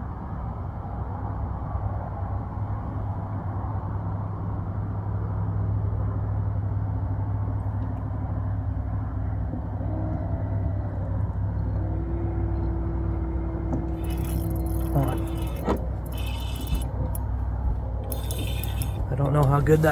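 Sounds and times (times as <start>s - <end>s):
boat motor humming: 13.7s - 19.9s.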